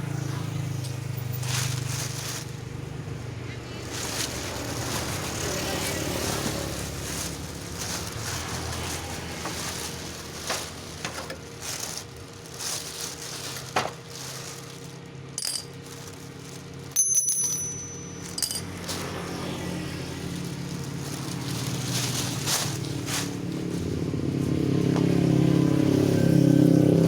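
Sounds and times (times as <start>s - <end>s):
sharp metallic clink: 17.0s - 18.7s.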